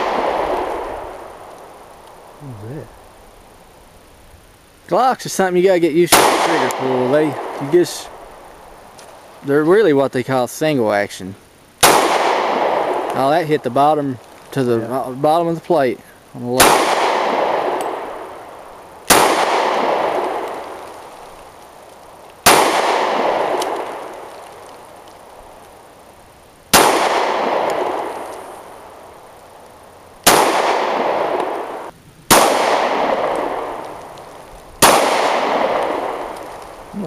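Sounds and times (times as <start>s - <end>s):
gunshots with long echo: 0.0s - 2.4s, 6.0s - 8.6s, 11.8s - 13.9s, 16.6s - 21.2s, 22.4s - 24.6s, 26.7s - 29.2s, 30.2s - 36.9s.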